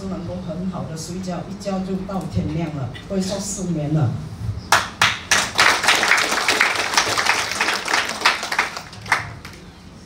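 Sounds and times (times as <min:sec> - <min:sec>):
audience applauding: 0:04.7 - 0:09.8.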